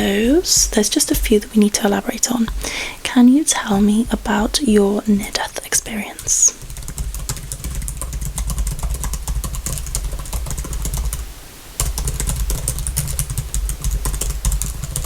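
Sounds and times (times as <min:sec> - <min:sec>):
keyboard typing: 0:03.7 - 0:11.2, 0:11.8 - 0:15.0.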